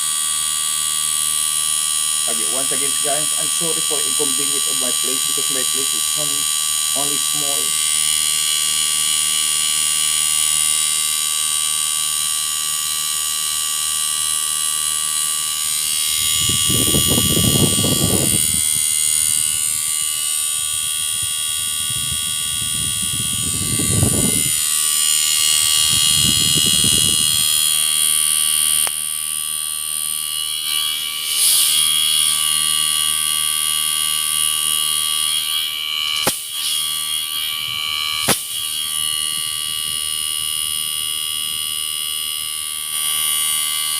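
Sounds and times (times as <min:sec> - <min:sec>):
air conditioner running: 0:00.0 - 0:30.2
high-pitched electronic whine: 0:00.0 - 0:43.9.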